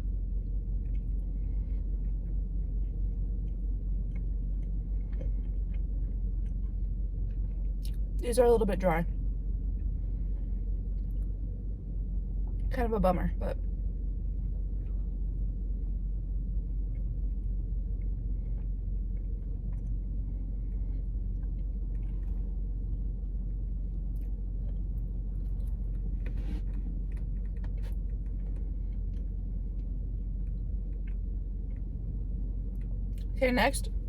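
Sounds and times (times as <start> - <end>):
low rumble: 0.0 - 34.0
person chewing: 2.9 - 7.6.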